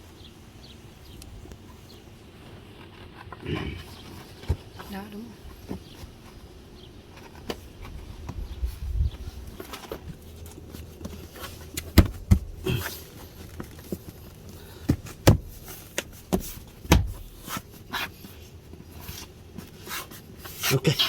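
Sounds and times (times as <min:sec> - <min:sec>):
louder thumps: 0:11.9 - 0:12.7, 0:14.9 - 0:15.6, 0:16.3 - 0:17.3.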